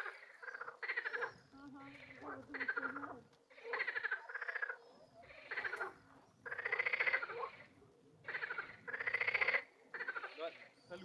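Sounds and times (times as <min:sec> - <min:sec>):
frogs croaking: 0:00.0 - 0:11.0.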